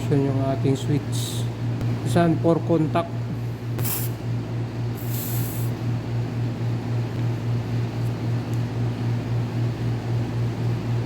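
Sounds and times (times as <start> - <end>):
aerosol spray hiss: 3.8 - 4.1, 5.0 - 5.7.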